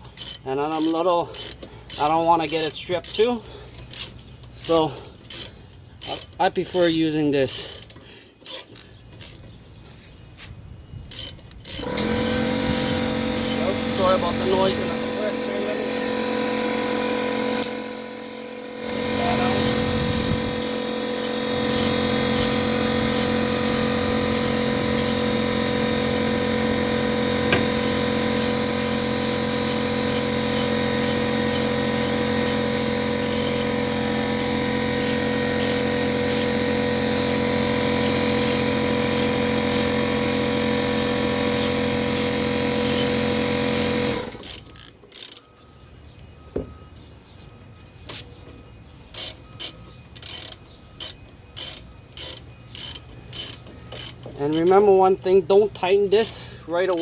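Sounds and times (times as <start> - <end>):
air compressor running: 11.7 - 44.6.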